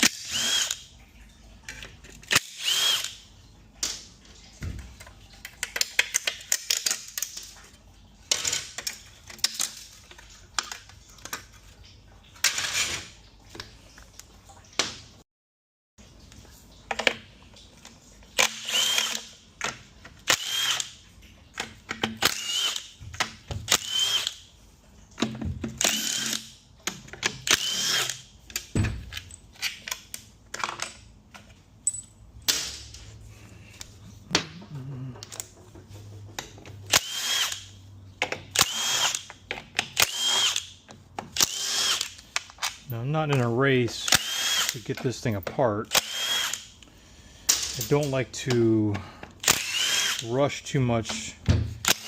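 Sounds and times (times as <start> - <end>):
cordless driver whining: 36.9 - 37.7, 38.5 - 39.2, 41.4 - 42.2, 44.0 - 44.8, 45.9 - 46.6, 49.4 - 50.3.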